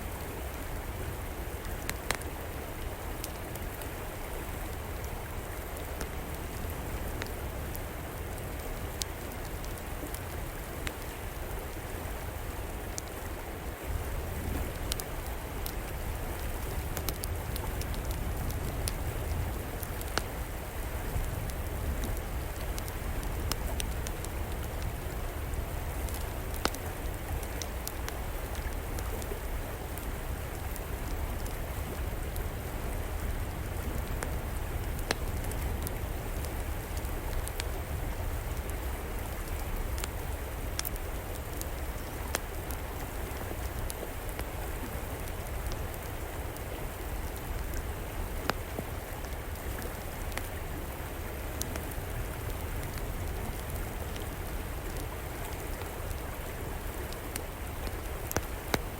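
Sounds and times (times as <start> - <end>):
river water flowing: 0.0 - 58.9
wood fire crackling and popping: 1.7 - 2.3, 13.9 - 32.6, 33.2 - 50.6, 57.0 - 58.9.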